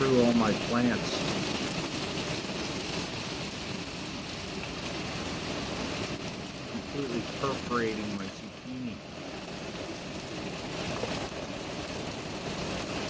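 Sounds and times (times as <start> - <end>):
hailstones pelting down: 0.0 - 13.0.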